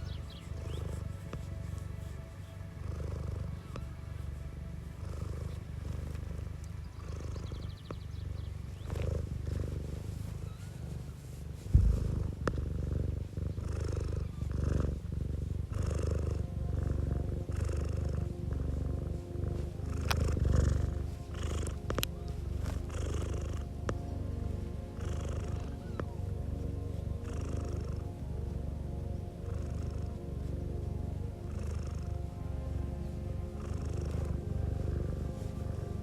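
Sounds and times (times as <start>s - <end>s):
cat purring: 0.0s - 36.0s
sharp knock: 11.8s - 12.4s.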